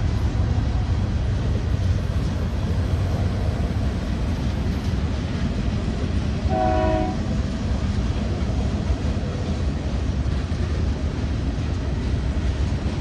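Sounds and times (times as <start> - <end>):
diesel locomotives rumbling: 0.0 - 13.0
locomotive horn blast: 6.5 - 7.2.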